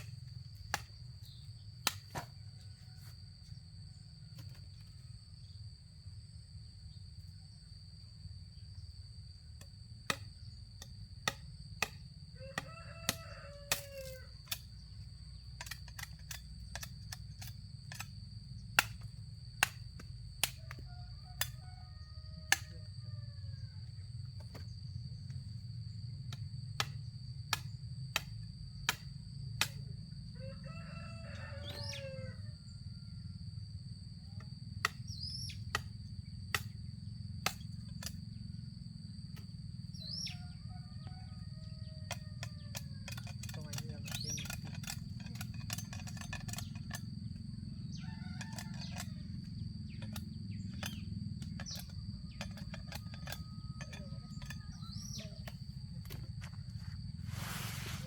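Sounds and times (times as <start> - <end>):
rooster crowing: 12.4 - 14.5, 20.6 - 24.0, 30.4 - 33.3, 40.2 - 44.0, 47.9 - 50.1, 56.4 - 58.0.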